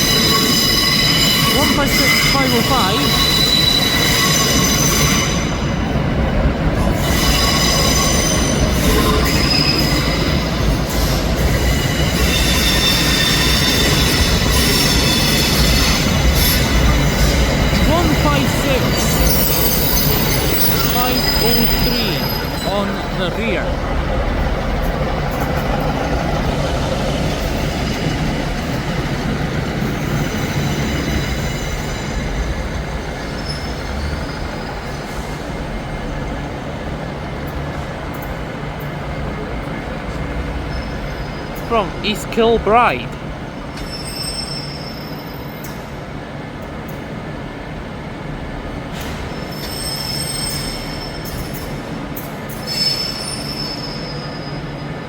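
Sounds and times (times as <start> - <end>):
train rumble: 0.0 - 42.3
wheel squeal: 33.2 - 35.4, 49.0 - 51.7, 52.5 - 54.8.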